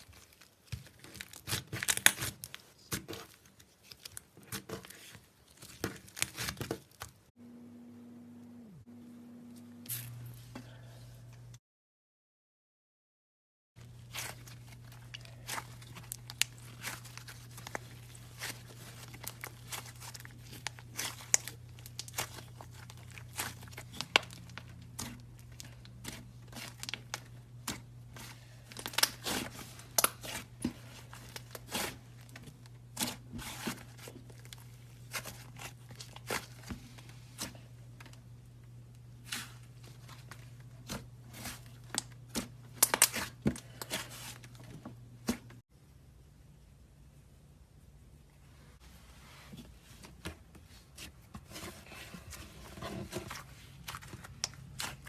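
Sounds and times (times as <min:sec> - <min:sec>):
steady low hum: 0:07.4 - 0:11.6.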